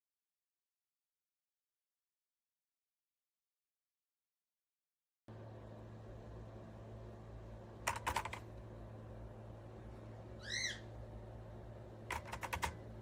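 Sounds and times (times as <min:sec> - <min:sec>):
low electrical hum: 0:05.3 - 0:13.0
mechanical keyboard key clicks: 0:07.9 - 0:08.4, 0:12.1 - 0:12.8.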